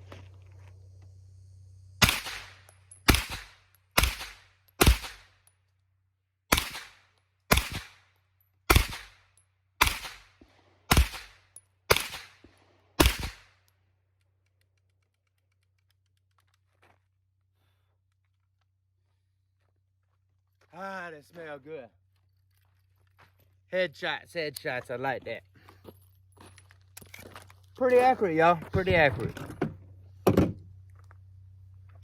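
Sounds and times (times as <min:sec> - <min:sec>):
rifle gunshots: 0:02.0 - 0:05.3, 0:06.5 - 0:08.0, 0:08.7 - 0:09.2, 0:09.8 - 0:10.3, 0:10.9 - 0:13.5.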